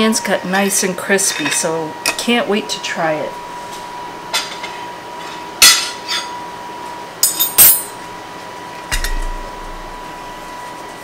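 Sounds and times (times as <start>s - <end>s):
dishes and utensils clinking: 7.2s - 8.0s.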